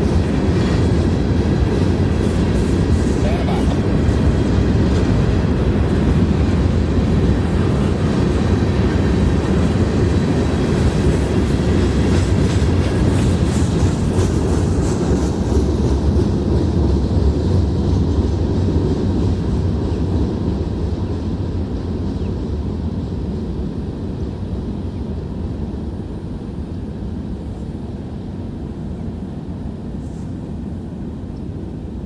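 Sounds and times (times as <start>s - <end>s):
train wheels rumbling on rail: 0.0s - 32.0s.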